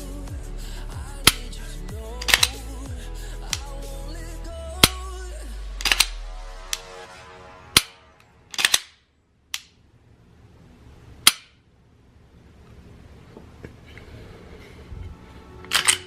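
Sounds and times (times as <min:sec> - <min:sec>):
background music: 0:00.0 - 0:09.0, 0:14.8 - 0:16.0
pistol trigger clicks: 0:02.2 - 0:02.6.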